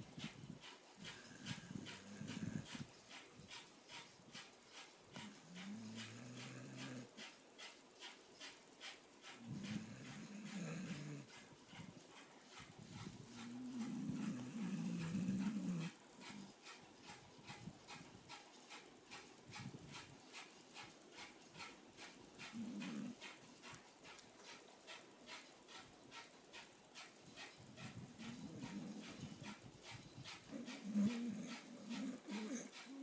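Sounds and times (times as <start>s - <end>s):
dog snoring: 1.0s - 2.9s, 5.2s - 7.3s, 9.4s - 11.8s, 12.9s - 16.5s, 22.4s - 23.4s, 28.2s - 29.6s, 30.2s - 33.0s.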